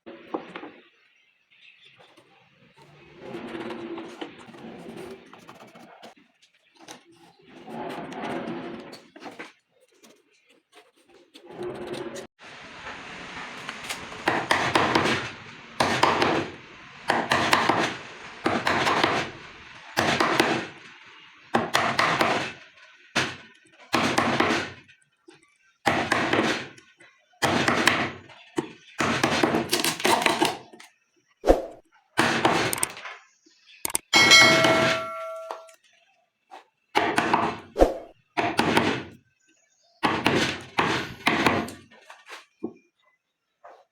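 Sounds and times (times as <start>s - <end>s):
hand tool working wood: 6.8s - 12.3s.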